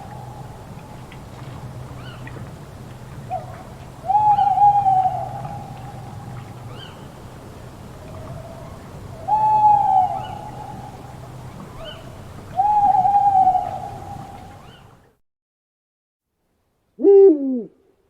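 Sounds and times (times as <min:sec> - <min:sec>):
owl hooting: 0:04.0 - 0:06.0, 0:09.2 - 0:10.9, 0:12.6 - 0:14.3, 0:17.0 - 0:17.8.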